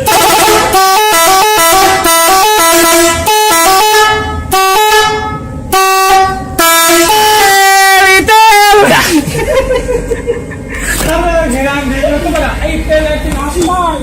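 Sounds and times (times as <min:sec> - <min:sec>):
multi-tone bus horn tune: 0:00.0 - 0:08.1.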